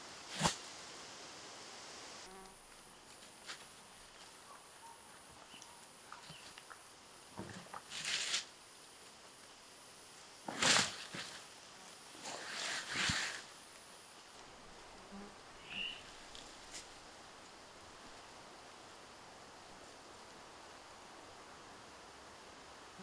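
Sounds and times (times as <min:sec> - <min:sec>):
faint steady hiss: 0:00.0 - 0:23.0
crunching rustles: 0:00.3 - 0:00.8, 0:02.3 - 0:09.4, 0:10.4 - 0:17.6
rustles and small clicks: 0:05.4 - 0:09.6, 0:10.4 - 0:11.6.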